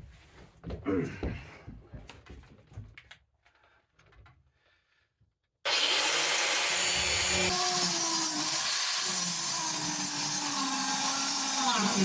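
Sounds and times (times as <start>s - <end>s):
power grinder on metal: 5.7s - 12.0s.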